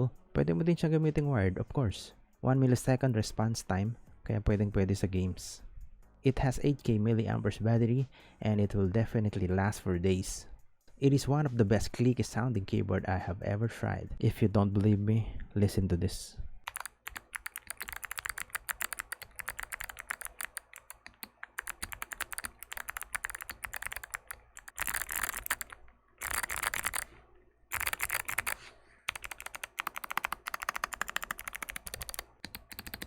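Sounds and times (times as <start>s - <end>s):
clicky mechanical keyboard typing: 16.7s - 27.1s, 27.7s - 33.0s.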